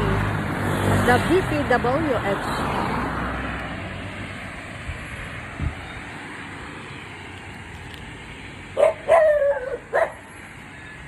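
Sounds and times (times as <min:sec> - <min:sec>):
faint road traffic: 0:00.0 - 0:11.0
dog barking: 0:08.8 - 0:10.2.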